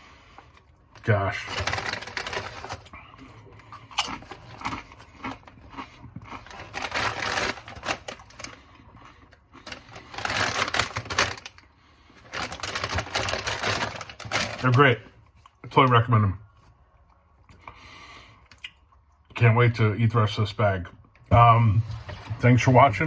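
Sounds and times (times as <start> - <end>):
chips being chewed: 1.3 - 11.6.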